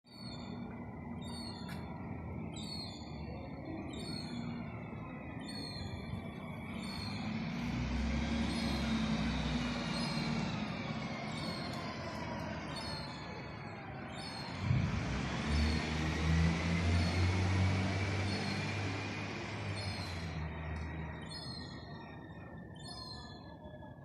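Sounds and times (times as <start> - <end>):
small birds chirping: 0.1 - 23.9
street traffic rumbling: 0.1 - 24.0
heavy vehicle passing: 5.9 - 22.6.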